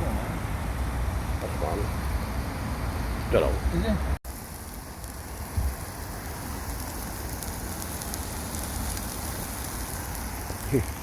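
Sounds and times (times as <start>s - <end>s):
burgers sizzling in a pan: 1.1s - 11.0s.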